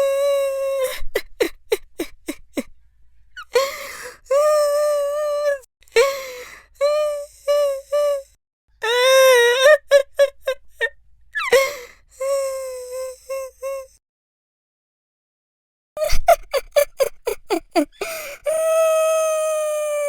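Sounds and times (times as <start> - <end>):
man sobbing: 16.0 - 19.0.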